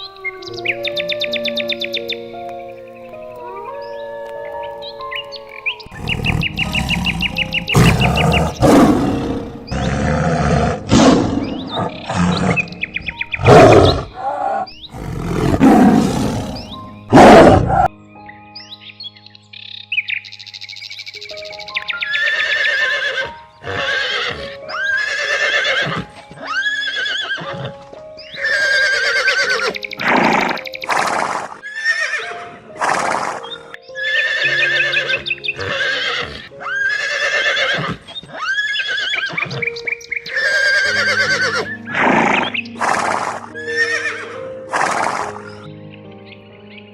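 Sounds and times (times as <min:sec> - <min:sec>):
background music: 0:00.0 - 0:46.9
horses whinnying: 0:05.9 - 0:12.8, 0:13.4 - 0:17.9, 0:22.1 - 0:27.8, 0:28.4 - 0:45.6.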